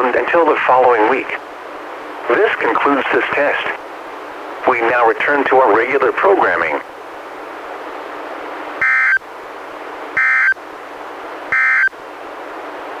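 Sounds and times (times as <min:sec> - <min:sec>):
radio hiss: 0:00.0 - 0:01.5, 0:02.2 - 0:03.9, 0:04.5 - 0:06.9.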